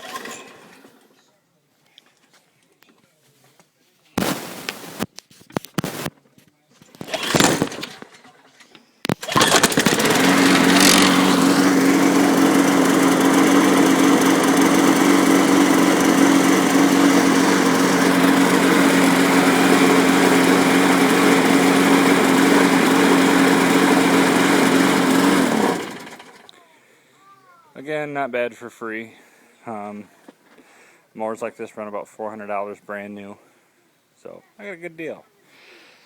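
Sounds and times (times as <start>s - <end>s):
lawn mower engine running: 0.0s - 0.8s, 7.0s - 8.2s, 9.1s - 26.6s.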